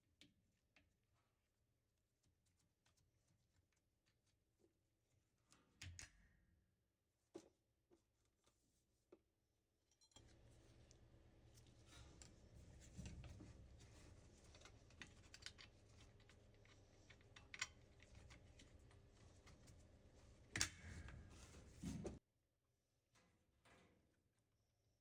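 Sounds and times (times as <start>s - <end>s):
faint clicks and taps: 10.2s - 22.2s.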